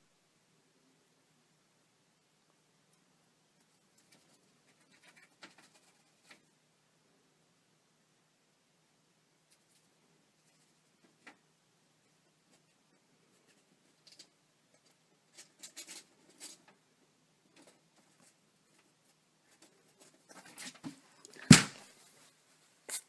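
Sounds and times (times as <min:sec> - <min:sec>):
loud thump: 0:21.4 - 0:21.8.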